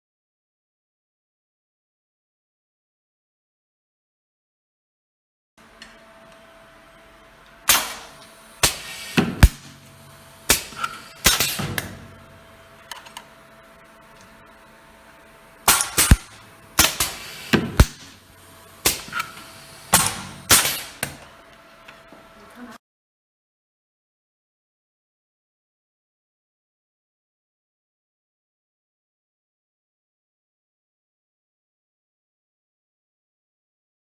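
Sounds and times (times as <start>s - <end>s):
stud welder firing sharp cracks: 7.7s - 12.2s, 15.6s - 18.2s, 18.8s - 21.3s.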